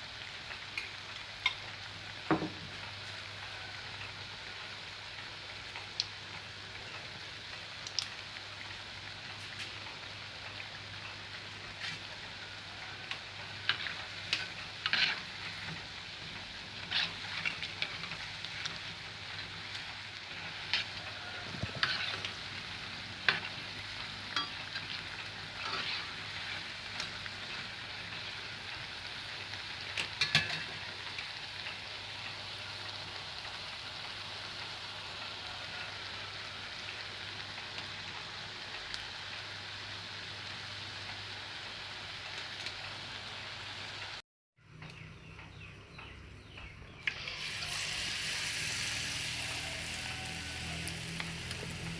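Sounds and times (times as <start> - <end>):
food frying in hot oil: 0.0 - 44.2, 47.0 - 51.9
utensil scraping a pan: 13.7 - 15.3, 16.8 - 18.0, 20.7 - 22.4, 25.6 - 26.1.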